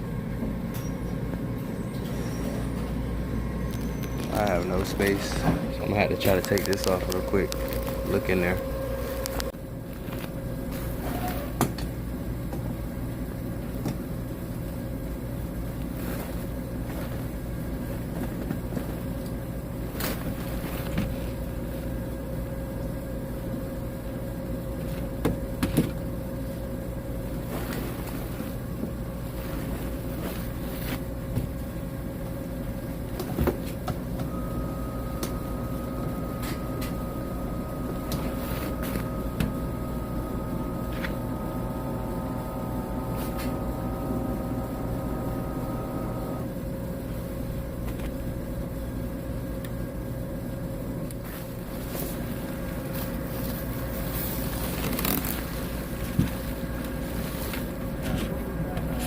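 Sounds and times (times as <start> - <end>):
dehumidifier humming: 0.0 - 59.0
higher steady tones: 3.2 - 9.6.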